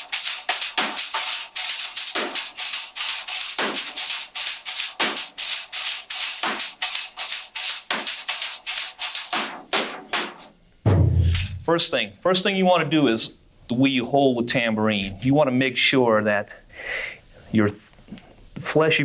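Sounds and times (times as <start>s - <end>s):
tambourine head thump: 10.8s - 11.6s.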